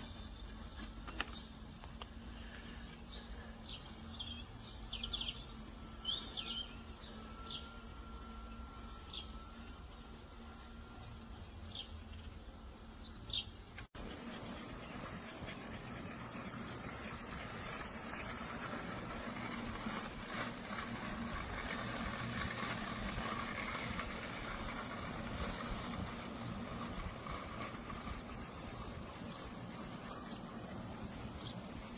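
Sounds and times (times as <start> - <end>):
robotic lawn mower humming: 0.0 - 31.9
bird chirping: 2.4 - 10.6, 11.2 - 20.4.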